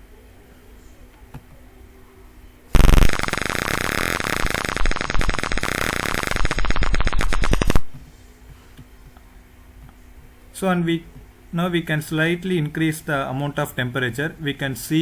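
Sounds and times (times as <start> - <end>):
piezo buzzer alarm tone: 2.8 - 7.8.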